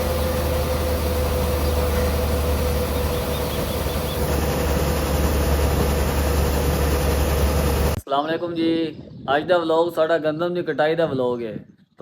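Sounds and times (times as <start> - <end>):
heavy engine droning: 0.0 - 8.0
steady hum: 0.0 - 8.0.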